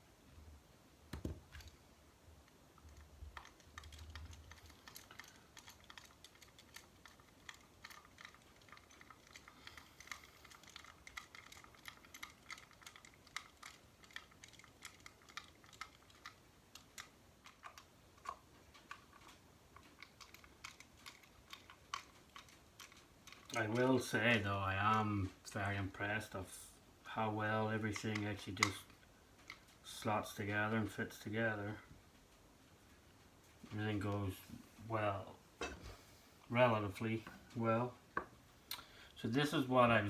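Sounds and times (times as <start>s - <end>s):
plastic parts clicking and tapping: 1.1s - 1.8s, 2.8s - 25.0s, 27.7s - 29.8s.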